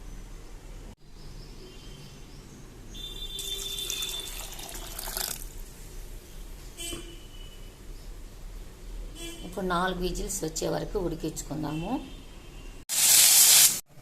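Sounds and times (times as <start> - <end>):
water pouring into a pot: 3.4 - 5.7.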